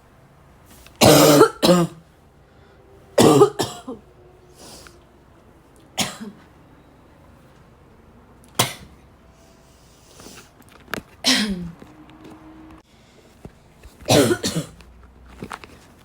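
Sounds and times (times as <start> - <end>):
woman coughing: 1.0 - 2.0, 3.2 - 4.0, 6.0 - 6.4, 8.6 - 8.9, 11.2 - 11.8, 14.1 - 14.8.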